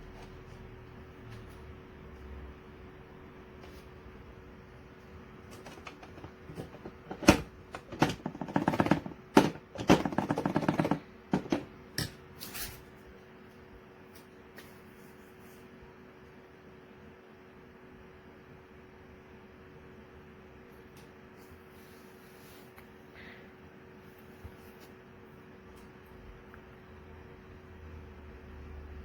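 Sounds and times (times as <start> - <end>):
faint steady hum: 0.0 - 29.0
hard objects rattling and clicking: 5.5 - 11.7.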